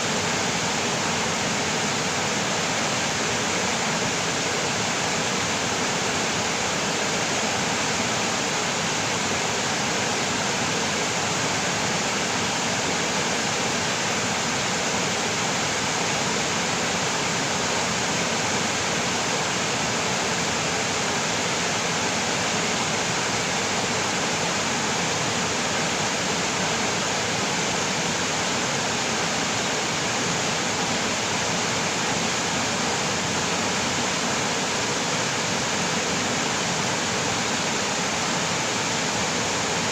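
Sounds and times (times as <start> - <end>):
stream water rushing over rocks: 0.0 - 39.9.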